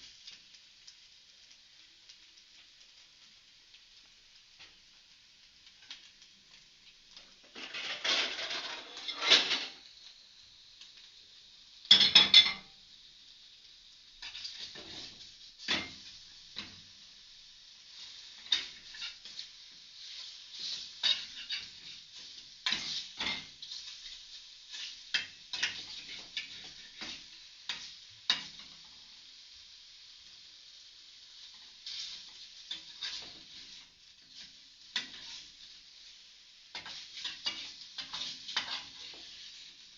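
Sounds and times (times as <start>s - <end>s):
bacon sizzling in a frying pan: 0.0s - 39.9s
utensil scraping a pan: 7.4s - 9.8s, 20.2s - 22.0s, 31.9s - 35.6s, 36.8s - 39.6s.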